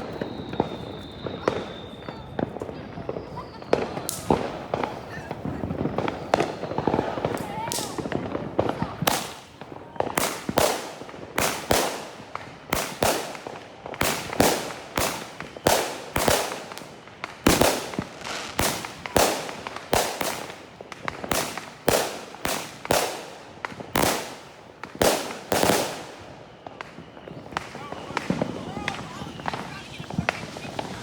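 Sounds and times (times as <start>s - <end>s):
fireworks bangs and cracks: 0.0s - 31.0s.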